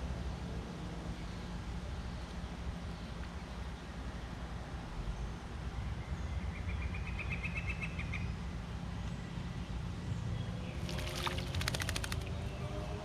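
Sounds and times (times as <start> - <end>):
rapid sharp ticks: 10.9 - 12.3.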